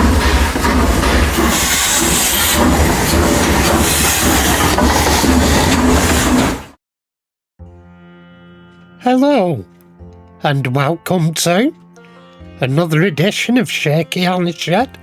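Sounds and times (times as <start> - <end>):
train rumbling and clattering: 0.0 - 6.8.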